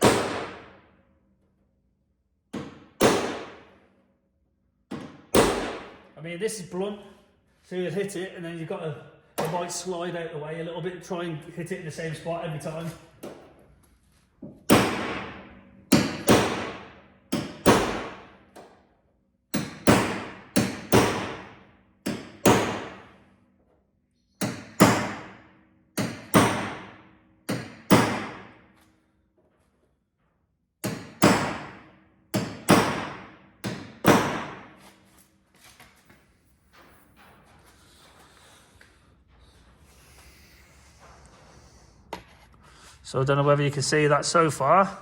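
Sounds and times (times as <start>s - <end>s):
hammer striking metal punch: 0.0s - 0.9s, 2.5s - 3.8s, 4.9s - 6.1s, 14.5s - 18.8s, 19.5s - 23.3s, 24.4s - 28.8s, 30.8s - 34.9s.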